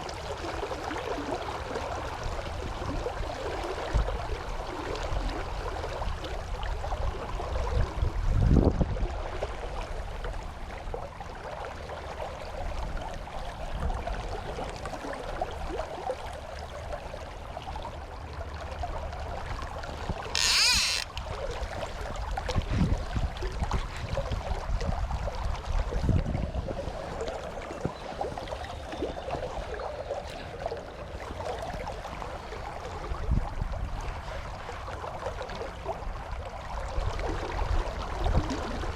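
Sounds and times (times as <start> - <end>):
river water running: 0.0 - 38.9
wind gusting on microphone: 22.1 - 27.1.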